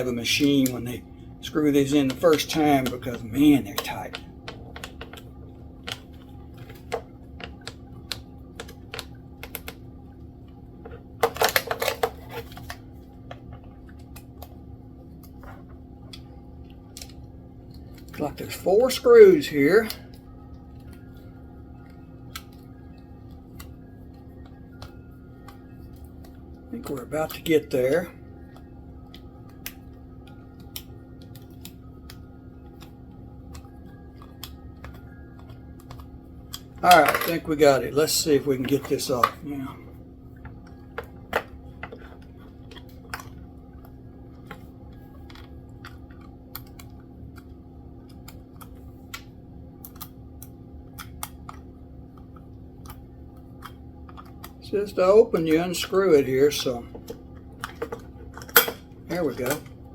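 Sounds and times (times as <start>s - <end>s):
faint steady hum: 0.0s - 59.9s.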